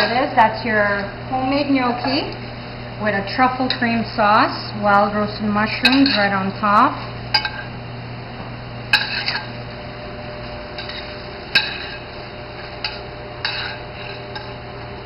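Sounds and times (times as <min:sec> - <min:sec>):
utensils clinking against dishes: 0:00.0 - 0:00.3, 0:05.7 - 0:06.5, 0:07.3 - 0:07.7, 0:08.9 - 0:09.6, 0:10.7 - 0:14.6
steady low hum: 0:00.0 - 0:15.0.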